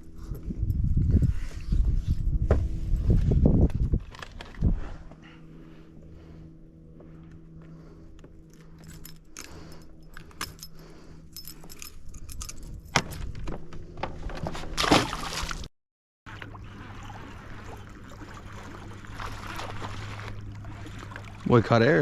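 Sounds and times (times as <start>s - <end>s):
boat motor humming: 0.0s - 15.7s, 16.3s - 22.0s
water sloshing beside boat: 0.0s - 15.7s, 16.3s - 22.0s
fishing gear clicking and rattling: 8.2s - 14.5s.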